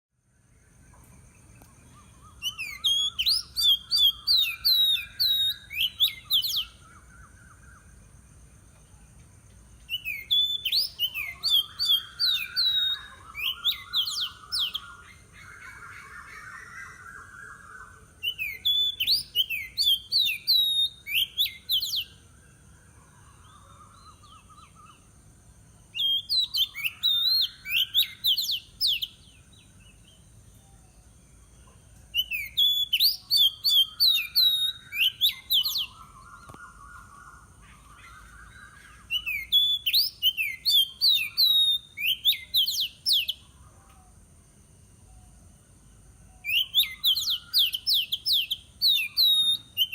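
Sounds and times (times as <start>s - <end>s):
birds warbling: 0.9s - 8.0s, 9.9s - 25.2s, 26.0s - 29.8s, 32.3s - 43.9s, 46.3s - 49.9s
bird whistling sharp notes: 2.1s - 6.8s, 9.9s - 15.0s, 18.2s - 22.1s, 32.2s - 36.1s, 39.1s - 43.4s, 46.5s - 49.9s.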